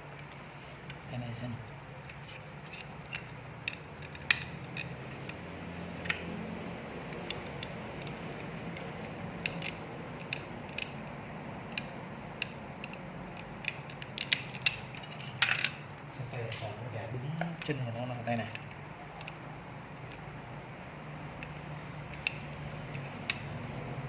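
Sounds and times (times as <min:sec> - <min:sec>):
small parts clicking and tapping: 0:00.0 - 0:16.7, 0:17.4 - 0:20.4, 0:21.3 - 0:23.7
steady low hum: 0:00.0 - 0:24.0.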